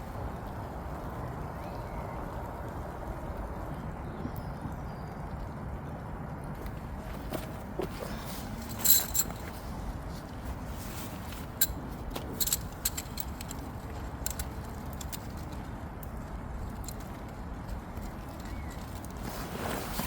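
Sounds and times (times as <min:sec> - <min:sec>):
low background noise: 0:00.0 - 0:20.0
metal gear clinking: 0:08.4 - 0:09.7, 0:11.1 - 0:15.7.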